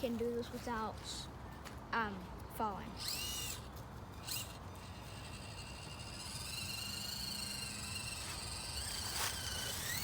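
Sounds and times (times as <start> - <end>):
small electric motor whining: 2.9 - 10.0.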